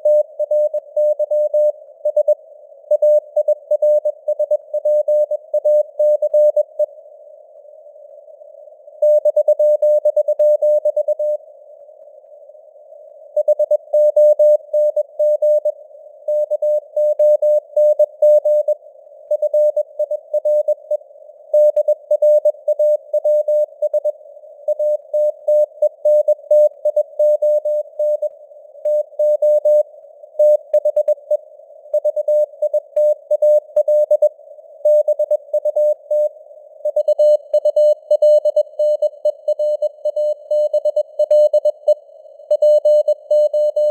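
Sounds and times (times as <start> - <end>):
morse code beeps: 36.9 - 43.9.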